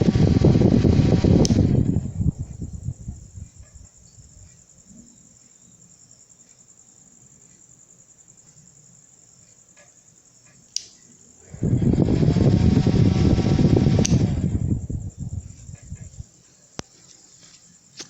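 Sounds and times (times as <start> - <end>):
fan motor hum: 0.0 - 18.0
sharp click: 9.8 - 11.0, 14.0 - 14.3.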